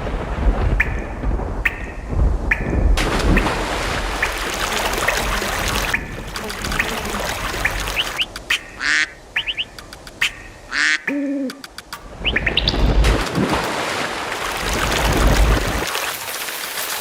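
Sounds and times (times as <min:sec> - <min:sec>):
steady rushing noise: 0:00.0 - 0:10.7
birds chirping: 0:05.0 - 0:13.1.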